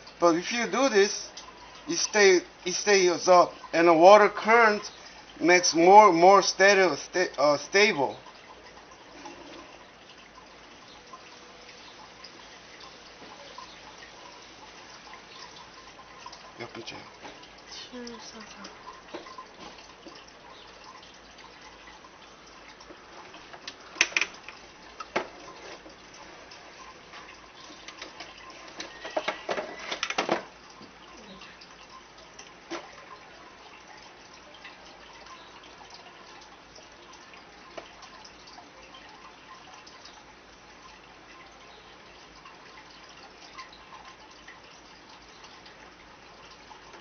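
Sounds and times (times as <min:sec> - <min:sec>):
water trickling and dripping: 0:00.0 - 0:47.0
sharp clicks and knocks: 0:23.5 - 0:25.8.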